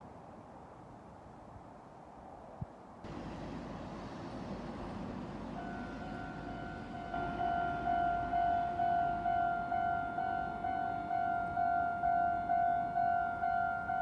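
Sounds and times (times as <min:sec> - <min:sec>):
steady rumble: 0:03.1 - 0:12.5
level crossing warning bell: 0:03.1 - 0:14.0.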